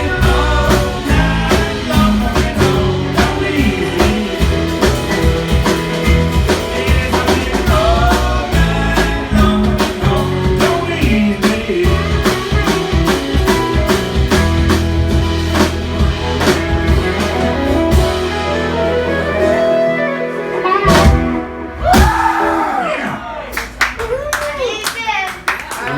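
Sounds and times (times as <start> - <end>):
person singing: 0.0 - 13.7
electric guitar: 0.0 - 21.9
drum kit beat: 0.0 - 22.8
bass: 0.0 - 25.2.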